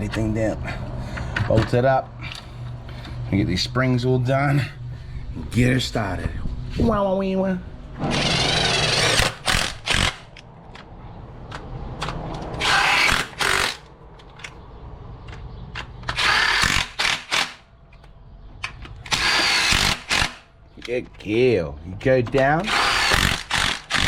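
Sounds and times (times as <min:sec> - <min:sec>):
power tool driving bolts: 0:08.0 - 0:10.4, 0:12.0 - 0:14.5, 0:15.8 - 0:17.7, 0:18.6 - 0:20.5, 0:22.2 - 0:24.0.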